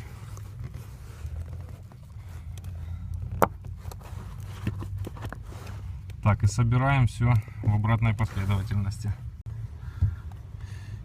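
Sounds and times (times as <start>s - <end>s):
rubber rubbing and scraping: 0.0s - 2.4s, 3.4s - 6.0s, 8.2s - 9.0s.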